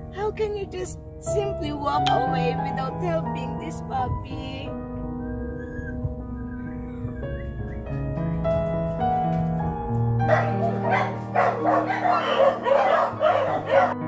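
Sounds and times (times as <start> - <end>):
soft piano music: 0.0 - 14.0
puppy yelping and barking: 10.3 - 14.0.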